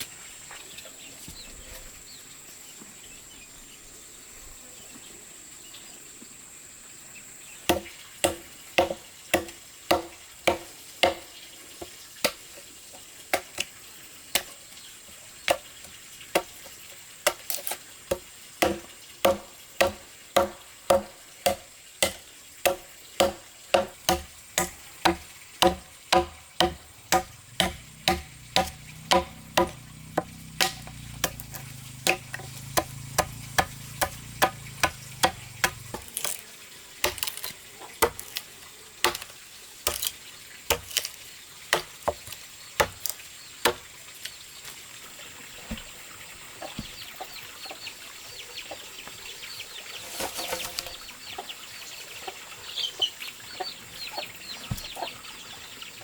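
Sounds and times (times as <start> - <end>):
hand tool striking wood: 7.7 - 12.5, 15.5 - 36.4, 37.0 - 43.9, 50.1 - 51.0.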